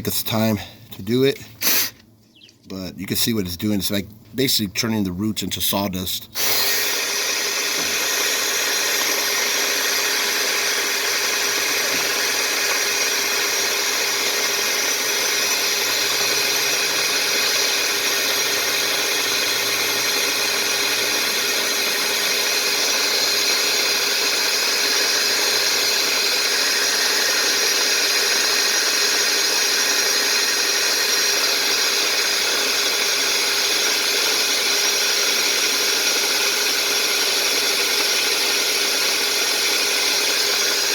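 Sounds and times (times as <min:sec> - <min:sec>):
drill spinning chains in a pipe: 0:06.4 - 0:40.9.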